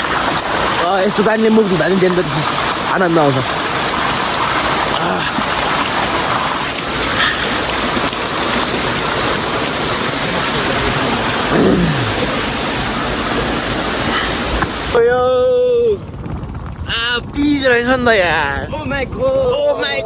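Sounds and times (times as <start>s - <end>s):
water pouring and splashing: 0.0s - 15.0s.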